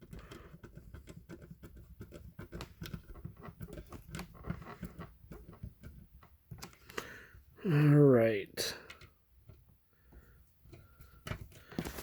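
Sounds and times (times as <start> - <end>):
screwdriver clicking and scratching: 0.0 - 6.8.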